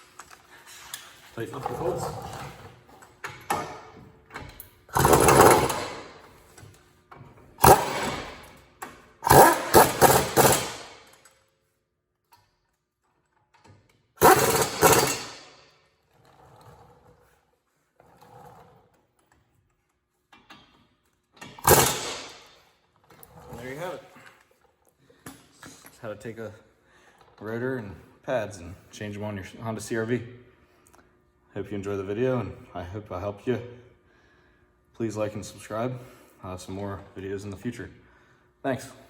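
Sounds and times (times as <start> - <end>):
impact wrench bursts: 4.9 - 6.4, 7.6 - 8.6, 9.2 - 11.2, 14.2 - 15.7, 21.4 - 22.6.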